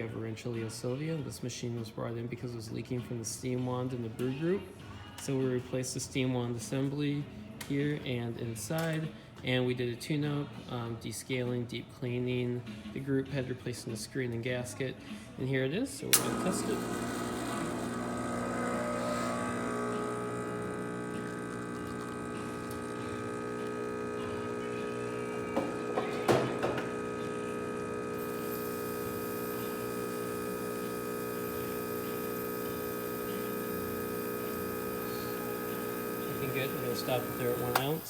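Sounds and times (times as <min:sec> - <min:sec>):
espresso machine pump buzzing: 0:16.1 - 0:38.0.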